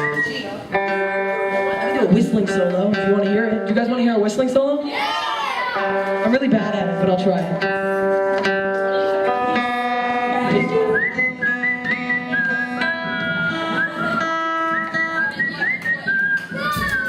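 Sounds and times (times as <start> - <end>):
person whistling a tune: 0.0 - 0.6, 10.4 - 17.0
guitar chords: 0.0 - 4.9, 5.5 - 17.0.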